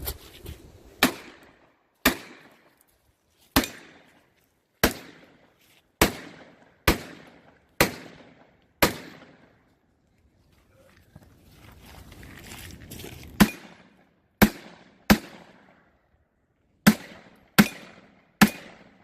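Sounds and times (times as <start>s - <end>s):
pistol shots echoing: 1.0s - 2.5s, 3.6s - 4.1s, 4.8s - 5.4s, 6.0s - 9.5s, 13.4s - 15.8s, 16.8s - 19.0s.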